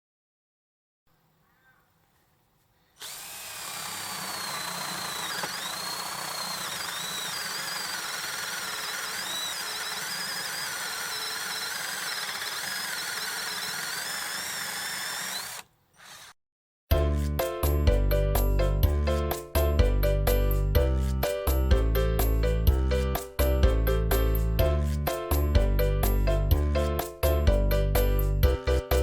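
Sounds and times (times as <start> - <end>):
cordless drill motor whining: 3.0 - 16.4
music: 16.9 - 29.0.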